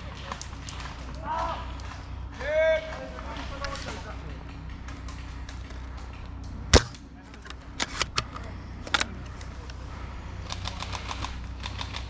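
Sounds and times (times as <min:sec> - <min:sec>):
airsoft gunfire snaps: 0:06.7 - 0:07.0.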